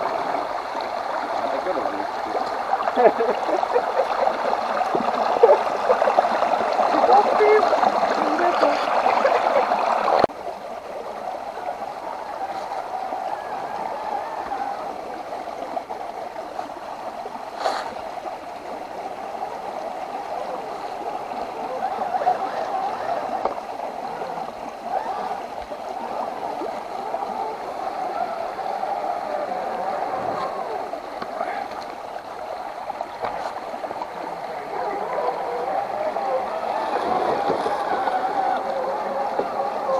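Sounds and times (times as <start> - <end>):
water gurgling: 0.0 - 39.9.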